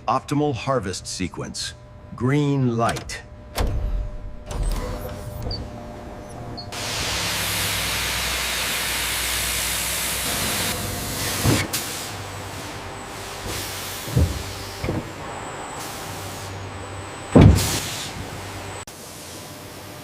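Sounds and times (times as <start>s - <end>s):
loud hiss: 6.7s - 16.6s, 17.3s - 19.8s.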